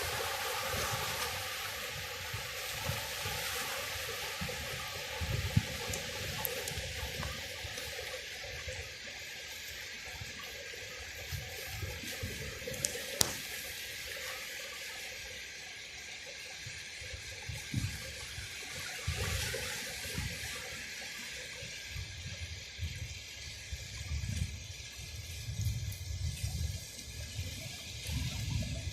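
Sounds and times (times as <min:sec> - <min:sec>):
wind rumbling on microphone: 0:00.0 - 0:08.0, 0:17.1 - 0:28.9
sea surf washing on shore: 0:00.0 - 0:08.7.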